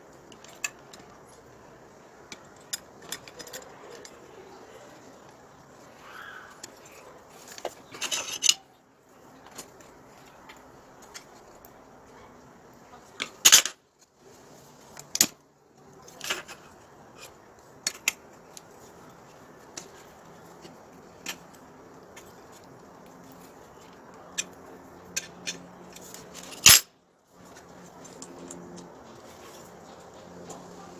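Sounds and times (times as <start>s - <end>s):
metal parts clinking: 2.4s - 4.4s, 7.5s - 8.6s, 13.4s - 13.8s, 25.1s - 26.9s.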